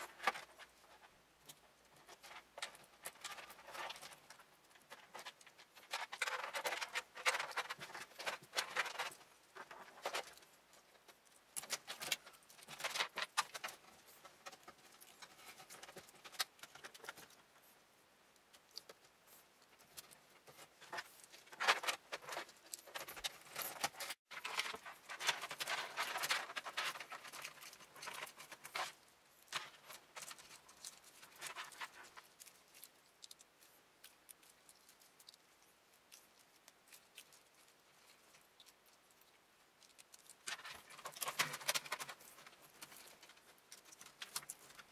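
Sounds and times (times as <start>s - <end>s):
plastic and wire clicks and rustles: 0.0s - 17.7s, 18.4s - 44.9s.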